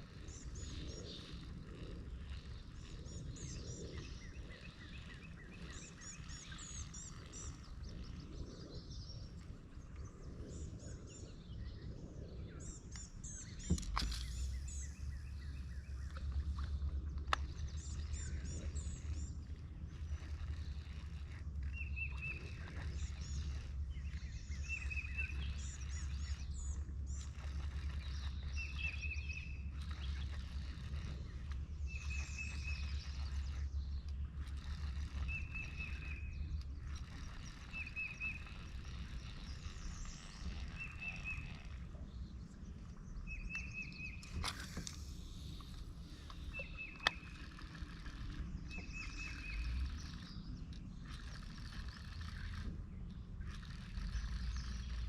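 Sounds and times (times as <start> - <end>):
bird chirping: 0.1 - 55.0.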